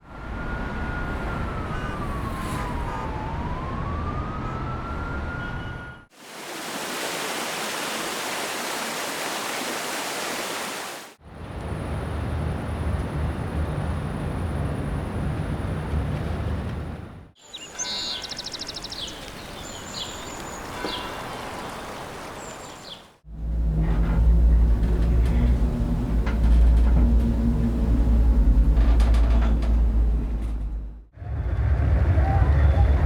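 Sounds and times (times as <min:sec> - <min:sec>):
distant siren: 0:00.0 - 0:06.2
low rumbling: 0:23.2 - 0:33.0.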